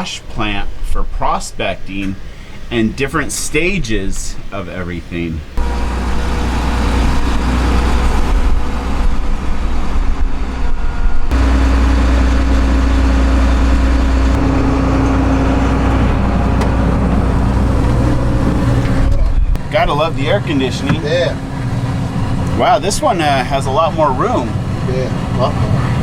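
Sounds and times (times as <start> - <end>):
diesel engine humming: 5.4 - 26.0.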